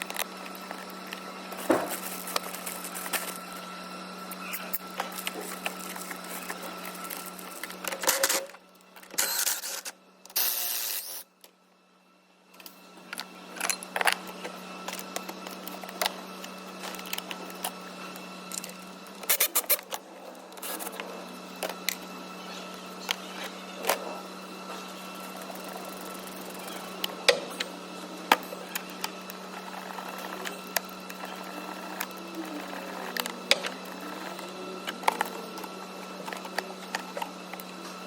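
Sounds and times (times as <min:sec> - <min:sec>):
tools and plastic parts rattling: 0:00.0 - 0:03.6.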